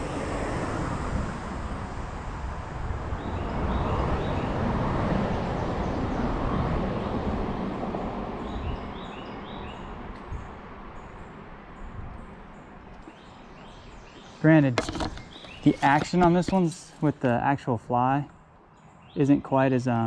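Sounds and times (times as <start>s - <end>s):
small birds chirping: 8.4s - 20.0s.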